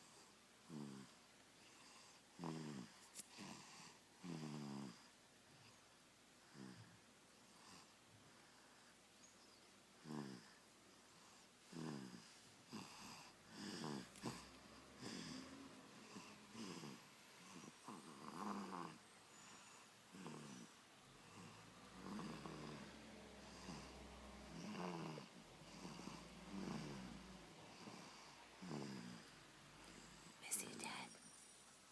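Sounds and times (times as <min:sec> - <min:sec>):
baby snoring softly: 0:00.0 - 0:09.0, 0:10.0 - 0:31.5.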